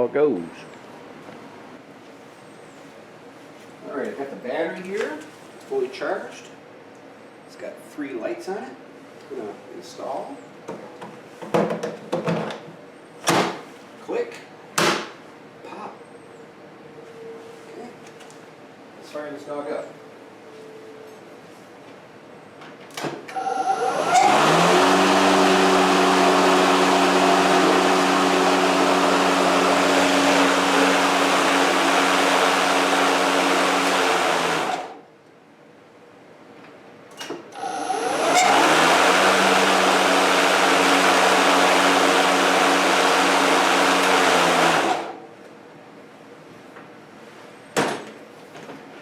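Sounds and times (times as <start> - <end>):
electric lawnmower motor whine: 23.3 - 35.0, 37.6 - 45.2.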